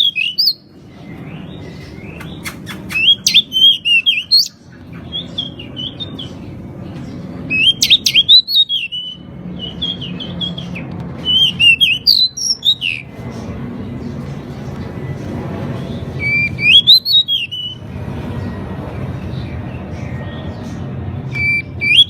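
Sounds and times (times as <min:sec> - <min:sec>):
low background hum: 0:00.0 - 0:22.0
bird chirping whistles: 0:02.0 - 0:04.6, 0:07.5 - 0:13.0, 0:16.2 - 0:17.8.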